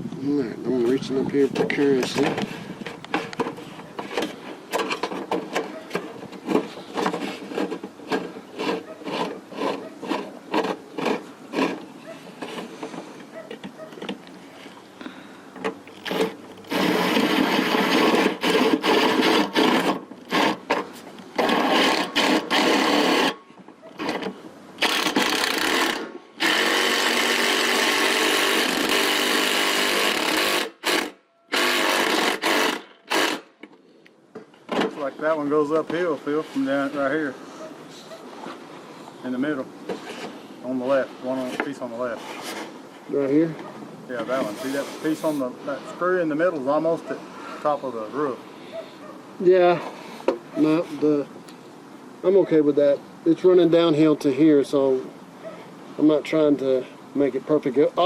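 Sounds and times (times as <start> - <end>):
rasping rubbing strokes: 2.0 - 14.8, 15.8 - 33.5, 44.2 - 46.4
power drill driving a screw: 16.0 - 20.8, 21.4 - 23.4, 24.0 - 33.5.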